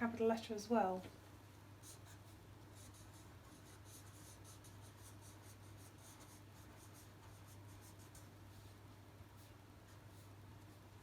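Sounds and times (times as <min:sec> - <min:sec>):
low steady hum: 0:00.0 - 0:11.0
pen scratching on paper: 0:01.8 - 0:08.7.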